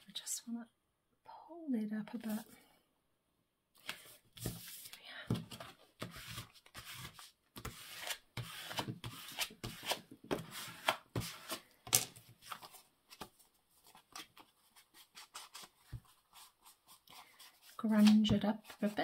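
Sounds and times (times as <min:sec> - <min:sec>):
paper rustling and rubbing: 0:03.9 - 0:11.7, 0:12.4 - 0:19.0.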